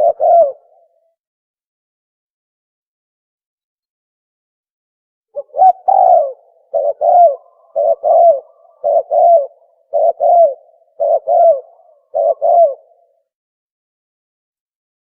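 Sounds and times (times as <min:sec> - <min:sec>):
dove cooing: 0:00.0 - 0:01.1, 0:05.4 - 0:13.3.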